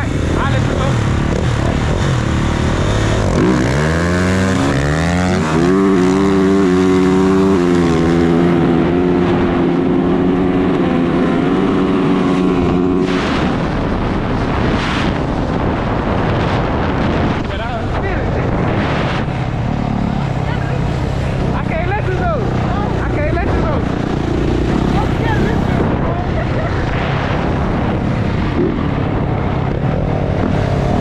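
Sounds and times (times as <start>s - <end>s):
dirt bike engine accelerating: 0.0s - 31.0s
wind on microphone: 0.0s - 31.0s.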